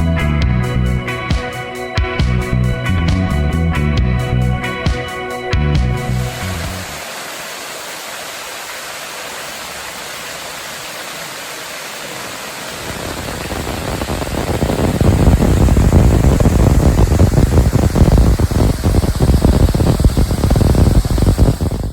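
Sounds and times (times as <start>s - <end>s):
fluttering low rumble: 2.2s - 4.7s, 5.6s - 7.0s, 14.2s - 21.9s
waterfall rushing: 6.0s - 21.9s.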